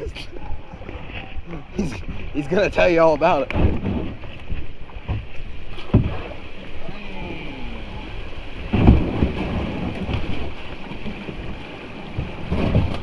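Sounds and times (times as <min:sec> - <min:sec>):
creek water running: 0:00.0 - 0:13.0
kayak and paddle knocks: 0:01.9 - 0:06.8, 0:08.5 - 0:13.0.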